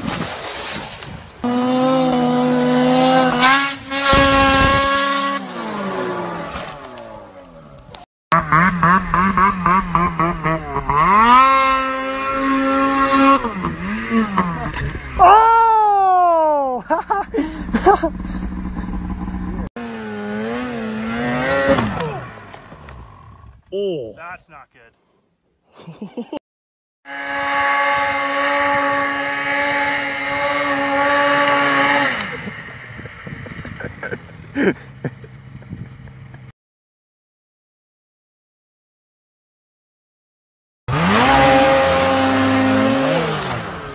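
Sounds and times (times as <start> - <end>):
snowmobile engine revving: 1.4 - 23.5, 27.1 - 36.0, 40.9 - 43.9.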